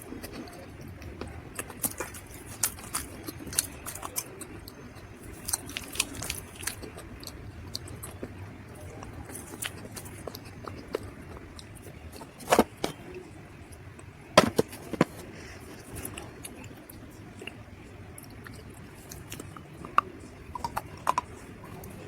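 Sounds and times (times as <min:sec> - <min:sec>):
faint chewing clicks: 0:00.0 - 0:22.0.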